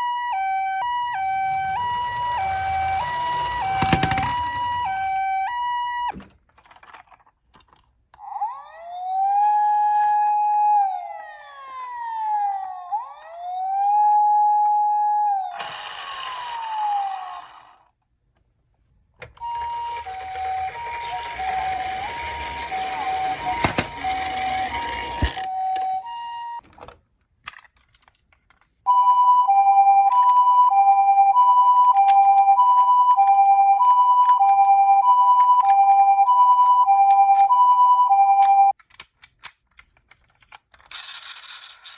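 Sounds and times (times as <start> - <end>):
two-tone ambulance siren: 0.0 - 6.2, 8.3 - 17.6, 19.4 - 26.6, 28.9 - 38.8
wail siren: 0.0 - 6.2, 8.2 - 17.6, 19.4 - 26.6, 28.9 - 38.7.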